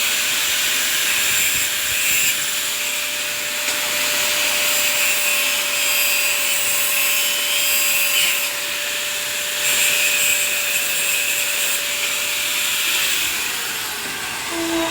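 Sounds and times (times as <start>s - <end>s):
motor machine whining: 13.4s - 14.9s.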